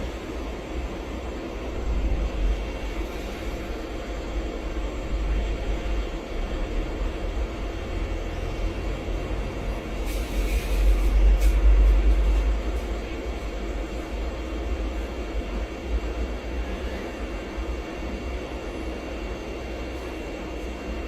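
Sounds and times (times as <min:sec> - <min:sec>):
hiss and clatter: 0:09.8 - 0:14.0.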